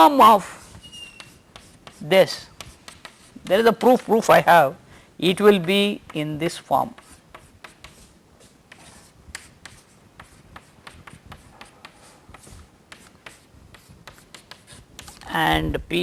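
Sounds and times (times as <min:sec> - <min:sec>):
pen scratching and tapping: 0:02.6 - 0:04.2, 0:06.9 - 0:08.1.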